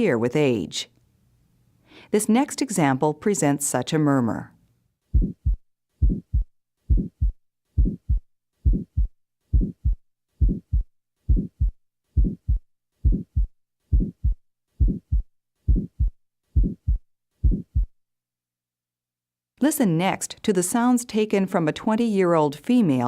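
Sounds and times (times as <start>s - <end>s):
heartbeat with murmur: 5.1s - 18.0s.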